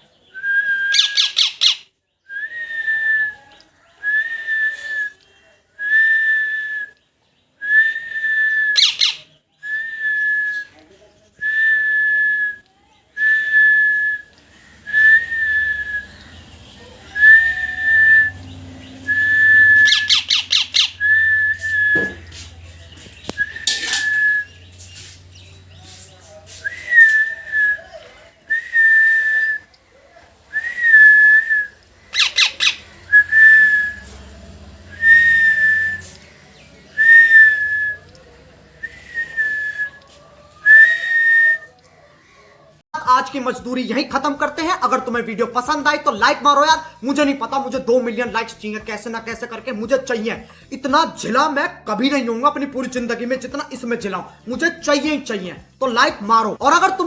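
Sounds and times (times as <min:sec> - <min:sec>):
parrot whistling: 0:00.4 - 0:02.9, 0:08.6 - 0:09.3, 0:14.8 - 0:22.3, 0:30.6 - 0:34.2, 0:34.8 - 0:38.1
parrot squawks: 0:00.9 - 0:01.9, 0:08.8 - 0:09.3, 0:18.8 - 0:21.0, 0:32.0 - 0:33.1.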